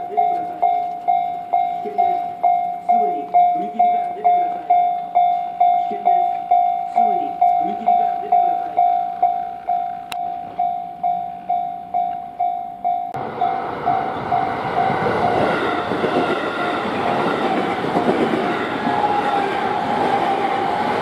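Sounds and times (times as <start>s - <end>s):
level-crossing warning bell: 0.0s - 21.0s
train wheels rushing on rails: 13.2s - 21.0s.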